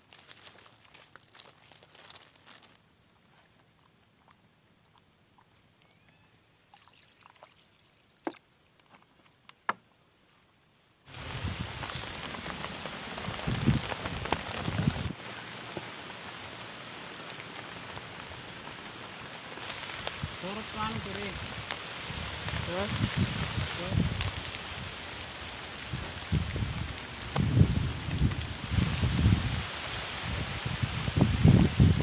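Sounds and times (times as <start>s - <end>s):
heavy rain: 11.1s - 32.0s.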